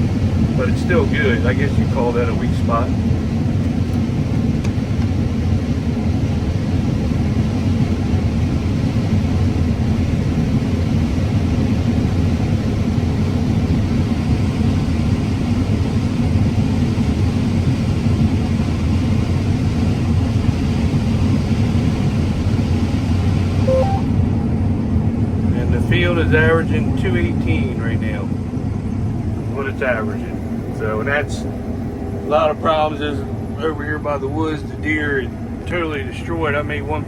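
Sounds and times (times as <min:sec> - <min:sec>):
combine harvester droning: 0:00.0 - 0:05.2, 0:29.0 - 0:37.0.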